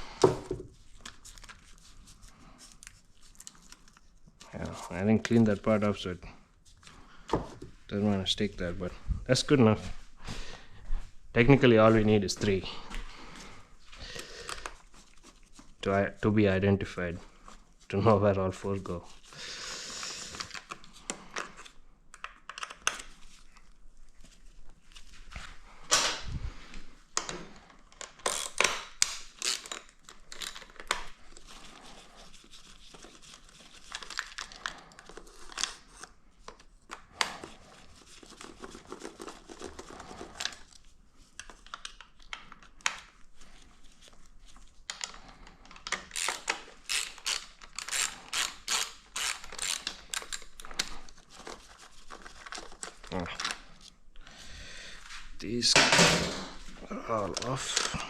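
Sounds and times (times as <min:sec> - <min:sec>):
rustling and tearing tape: 0:00.2 - 0:07.2, 0:13.8 - 0:15.9, 0:18.6 - 0:26.5, 0:27.1 - 0:54.4
hand ratchet clicking: 0:46.1 - 0:50.3.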